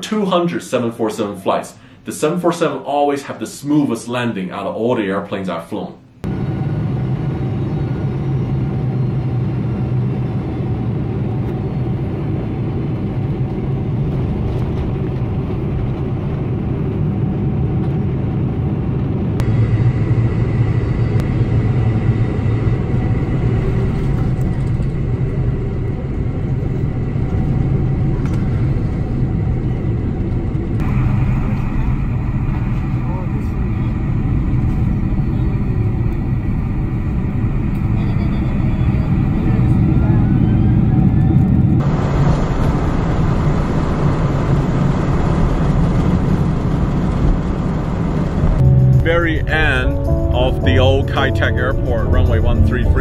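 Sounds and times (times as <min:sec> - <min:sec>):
aircraft engine and airflow rumble: 0:06.1 - 0:53.0
faint high tone: 0:48.6 - 0:53.0.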